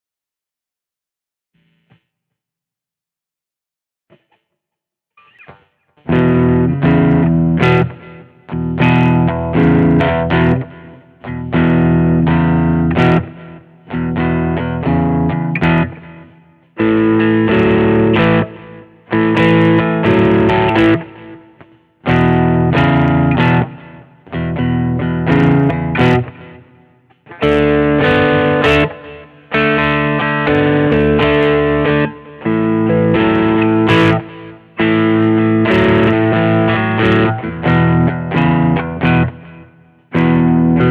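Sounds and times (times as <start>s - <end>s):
overdriven electric guitar chords: 5.4s - 40.9s.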